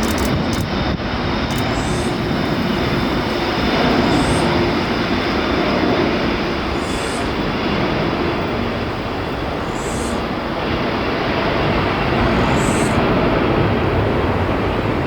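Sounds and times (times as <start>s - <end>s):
jet engines roaring: 0.0s - 15.0s.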